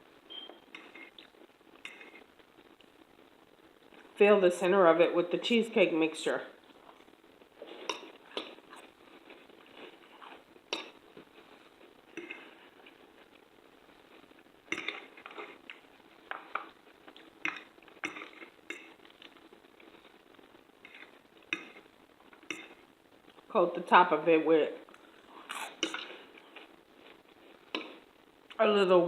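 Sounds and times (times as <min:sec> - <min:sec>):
cutlery clinking against dishes: 0:14.7 - 0:15.5.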